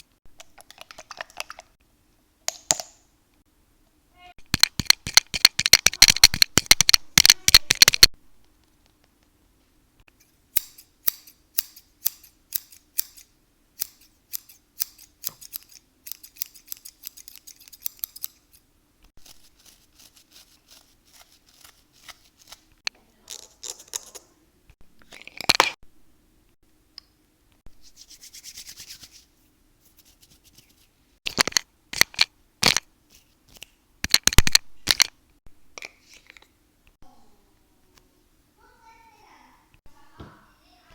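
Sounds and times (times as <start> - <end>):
scissors snipping hair: 10.6 - 18.6, 19.2 - 22.7
rubbing and brushing hair: 19.2 - 22.8, 27.7 - 31.0.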